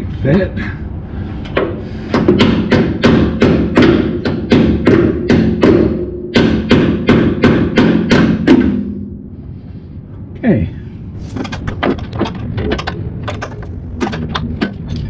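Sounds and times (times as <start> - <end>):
hammer tapping metal: 1.6 - 9.1.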